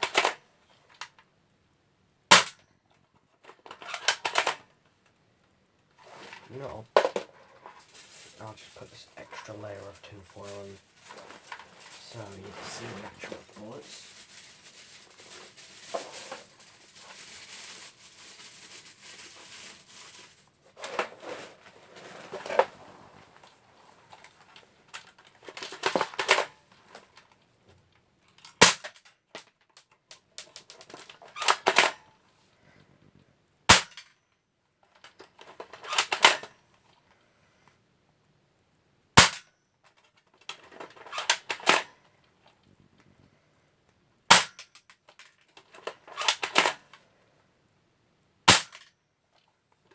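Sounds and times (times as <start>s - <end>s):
bb gun shots: 2.3s - 2.6s, 33.7s - 34.0s, 48.5s - 48.8s
gun handling rattling clicks: 3.6s - 4.6s
tinfoil crinkling: 6.0s - 27.4s.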